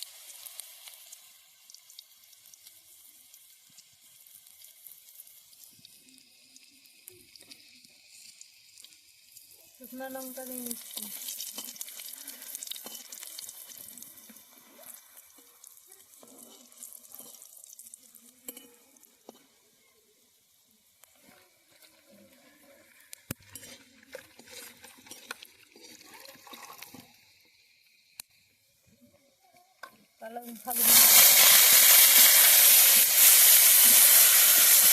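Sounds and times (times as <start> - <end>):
hot oil sizzling and crackling: 0.0 - 34.9.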